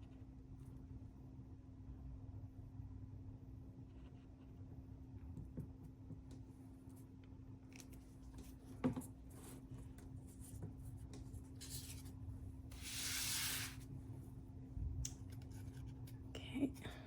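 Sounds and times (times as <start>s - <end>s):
paper rubbing: 12.7s - 13.8s.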